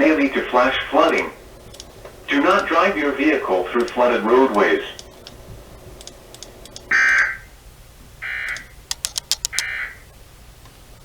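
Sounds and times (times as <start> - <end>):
sharp clicks: 1.0 - 3.1, 3.7 - 7.3, 8.4 - 9.8.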